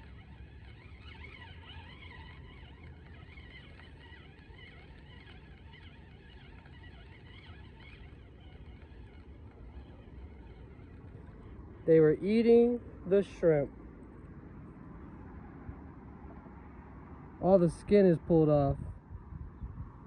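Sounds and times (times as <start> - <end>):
birds chirping: 0.0 - 14.4
low steady rumble: 0.0 - 20.0.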